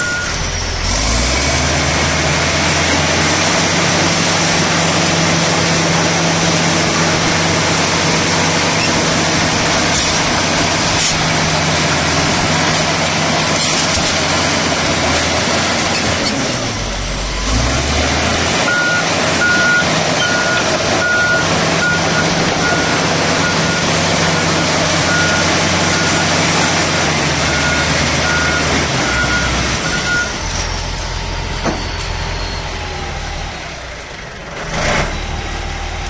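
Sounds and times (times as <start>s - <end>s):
reverse alarm beeping: 0.0s - 0.4s, 18.7s - 26.8s, 27.4s - 33.0s
bulldozer diesel engine running: 0.0s - 36.0s.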